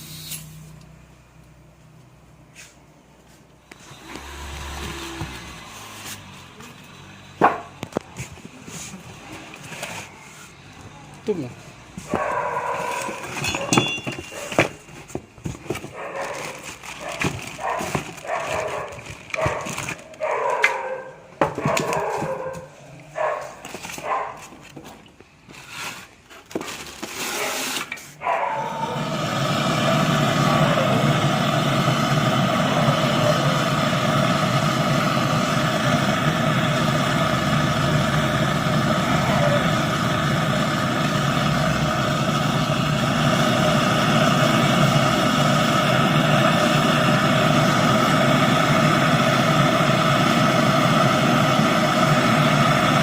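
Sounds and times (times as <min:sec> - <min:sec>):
dog barking: 0:12.1 - 0:14.6, 0:15.9 - 0:24.5, 0:28.2 - 0:28.8.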